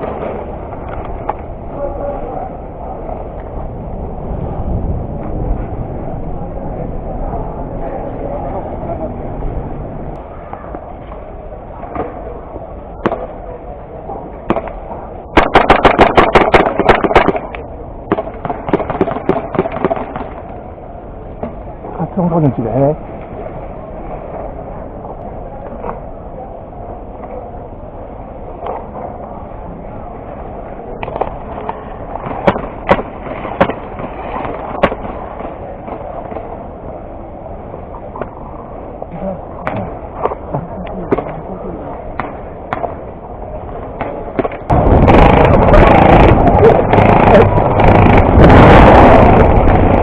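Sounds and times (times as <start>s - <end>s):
steady background noise: 0.0s - 50.0s
airsoft gun shots: 15.4s - 17.5s
airsoft guns firing: 15.4s - 20.4s, 32.2s - 35.2s.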